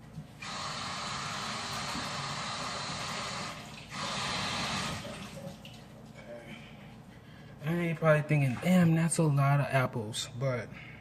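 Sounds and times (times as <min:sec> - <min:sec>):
water running from a tap: 0:00.4 - 0:06.0.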